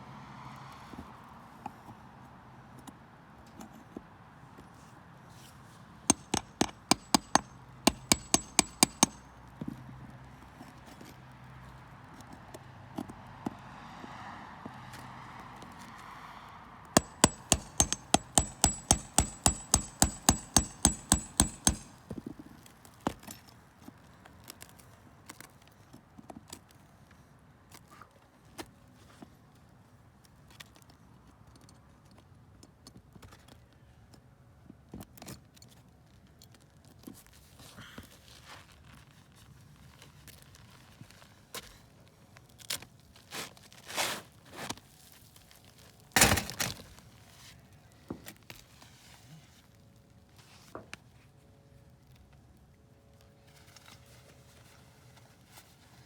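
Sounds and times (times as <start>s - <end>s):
sharp ringing strikes: 6.1s - 9.2s, 17.0s - 21.9s.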